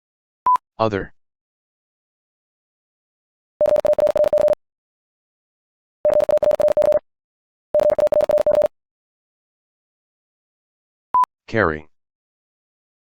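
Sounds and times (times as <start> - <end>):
morse code tone: 3.6 - 4.6, 6.0 - 7.0, 7.8 - 8.7.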